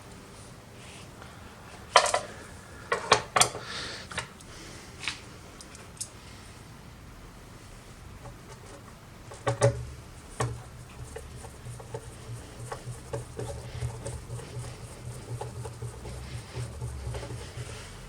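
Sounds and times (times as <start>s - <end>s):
low hum: 9.9s - 18.0s.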